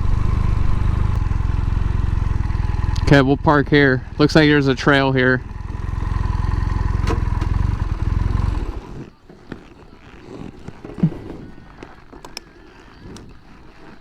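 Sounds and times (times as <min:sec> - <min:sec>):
motorcycle engine idling: 0:00.0 - 0:14.0
faint clicks and handling noises: 0:08.6 - 0:14.0.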